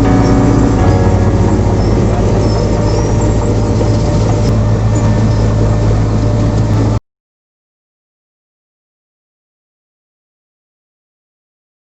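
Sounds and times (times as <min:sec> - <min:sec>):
heavy diesel engine humming: 0:00.0 - 0:07.0.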